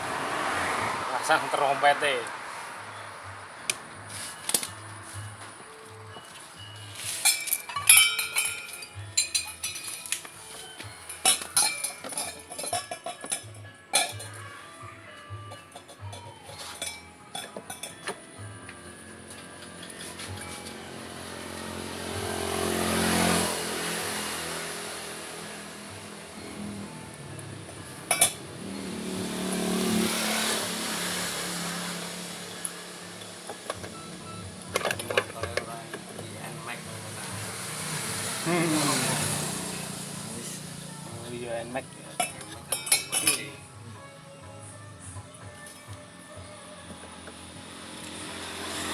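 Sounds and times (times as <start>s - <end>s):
motorcycle engine revving: 0.0s - 5.4s, 18.4s - 44.2s, 46.8s - 48.9s
metal parts and tools clinking: 6.8s - 14.4s, 15.5s - 18.2s, 34.7s - 36.3s, 42.2s - 43.6s.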